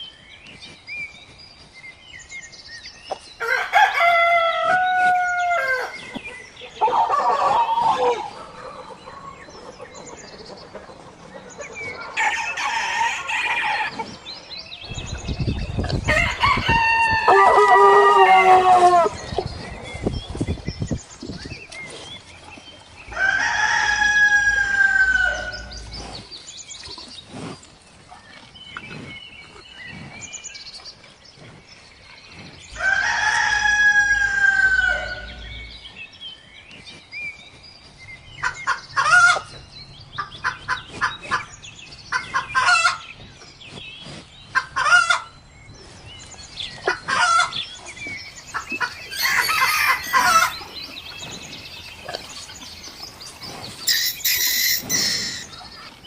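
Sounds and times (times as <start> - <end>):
rooster crowing: 3.4 - 5.9, 49.1 - 50.7, 53.9 - 55.5.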